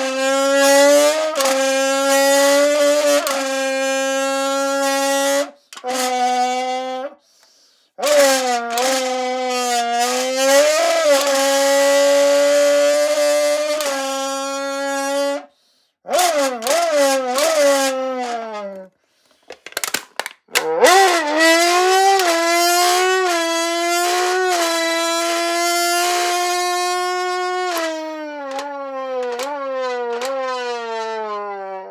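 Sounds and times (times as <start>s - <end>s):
person buzzing into a can: 0.0s - 15.5s, 16.1s - 31.5s
clicks: 19.4s - 21.4s, 27.7s - 30.6s.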